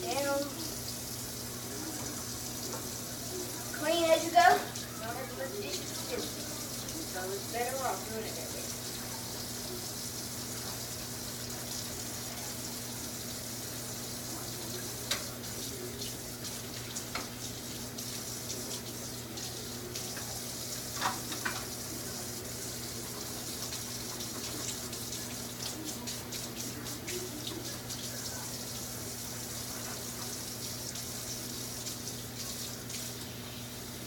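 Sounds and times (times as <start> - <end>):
tap running into sink: 20.9 - 21.8.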